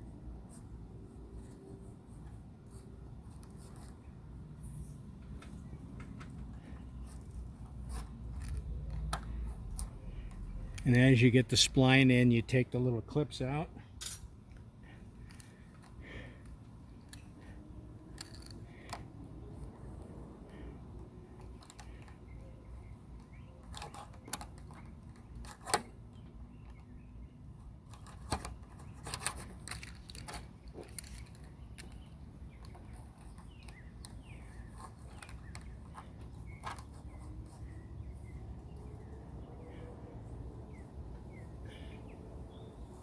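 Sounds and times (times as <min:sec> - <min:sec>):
clips being pulled out: 0:05.2 - 0:10.9, 0:14.0 - 0:19.8, 0:27.9 - 0:37.8.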